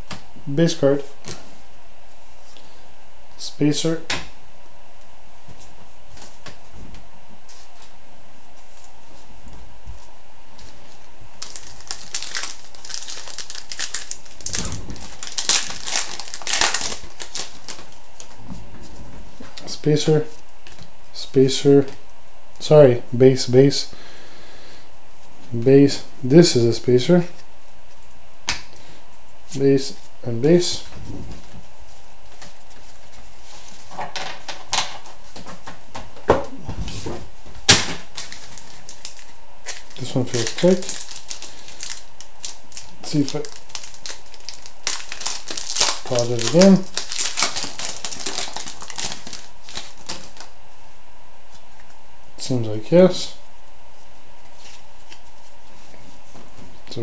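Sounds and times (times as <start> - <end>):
card pack wrapper crinkling: 11.4 - 18.4, 38.1 - 50.5.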